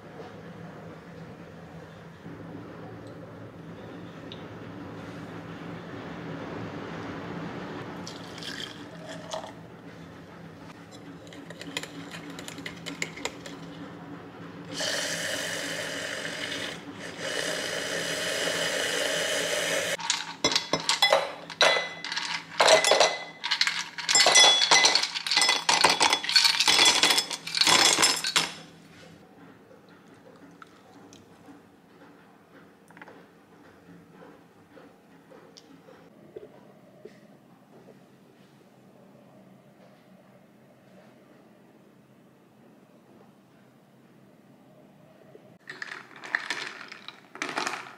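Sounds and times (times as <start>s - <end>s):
glass and metal ware clinking: 20.0s - 28.7s.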